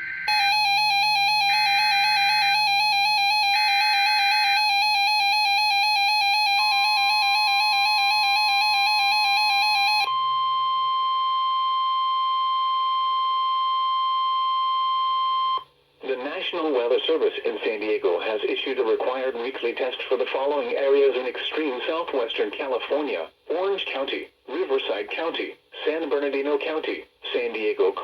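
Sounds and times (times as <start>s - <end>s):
steady warning alarm tone: 0.0s - 12.0s.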